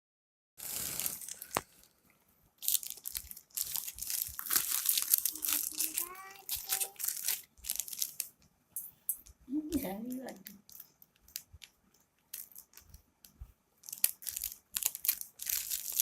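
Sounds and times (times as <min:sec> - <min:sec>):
plastic packaging crinkling and tearing: 0:00.6 - 0:01.9, 0:02.6 - 0:08.4, 0:12.3 - 0:13.0, 0:13.8 - 0:16.0.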